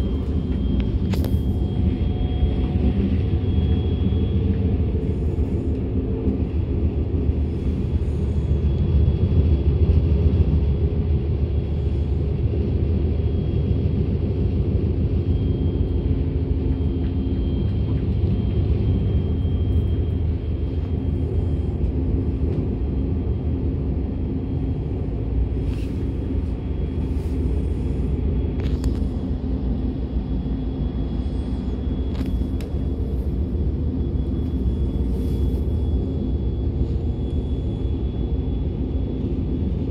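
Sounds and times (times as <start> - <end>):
train wheels rumbling on track: 0.0 - 39.9.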